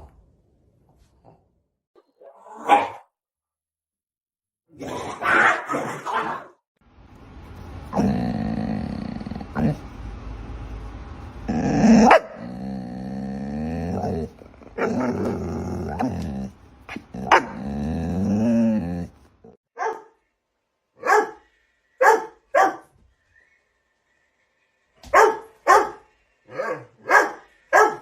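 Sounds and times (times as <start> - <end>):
dog barking: 2.5 - 3.1, 5.2 - 6.5, 12.0 - 12.4, 17.2 - 17.6, 19.8 - 20.2, 21.0 - 21.4, 22.0 - 22.9, 25.1 - 28.0.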